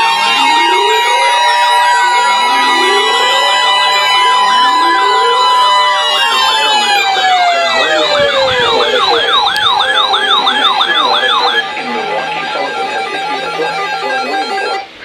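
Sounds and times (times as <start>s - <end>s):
alarm sirens yelping: 0.0s - 15.0s
falling siren tone: 0.0s - 15.0s
steady alert tone: 7.6s - 15.0s.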